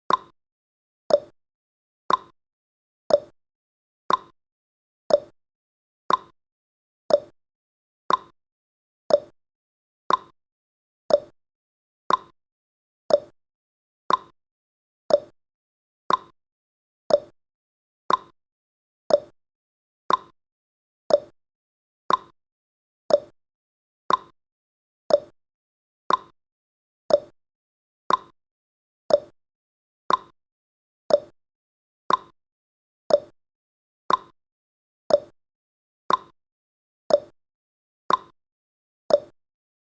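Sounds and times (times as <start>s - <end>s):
timer ticking: 0.1s - 0.3s, 1.1s - 1.3s, 2.1s - 2.3s, 3.1s - 3.3s, 4.1s - 4.3s, 5.1s - 5.4s, 6.1s - 6.3s, 7.1s - 7.4s, 8.1s - 8.4s, 9.1s - 9.4s, 10.1s - 10.3s, 11.1s - 11.4s, 12.1s - 12.3s, 13.1s - 13.4s, 14.1s - 14.4s, 15.1s - 15.4s, 16.1s - 16.4s, 17.1s - 17.4s, 18.1s - 18.3s, 19.1s - 19.4s, 20.1s - 20.4s, 21.1s - 21.4s, 22.1s - 22.4s, 23.1s - 23.4s, 24.1s - 24.4s, 25.1s - 25.4s, 26.1s - 26.4s, 27.1s - 27.4s, 28.1s - 28.4s, 29.1s - 29.4s, 30.1s - 30.4s, 31.1s - 31.4s, 32.1s - 32.4s, 33.1s - 33.4s, 34.1s - 34.4s, 35.1s - 35.4s, 36.1s - 36.4s, 37.1s - 37.4s, 38.1s - 38.4s, 39.1s - 39.4s.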